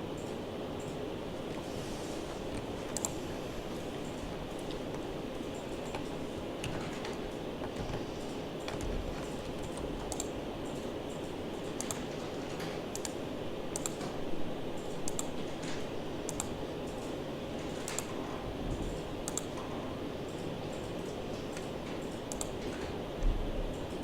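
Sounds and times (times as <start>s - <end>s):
steady background noise: 0.0s - 24.0s
mouse and keyboard clicks: 2.5s - 3.2s, 12.9s - 14.0s, 19.3s - 19.5s.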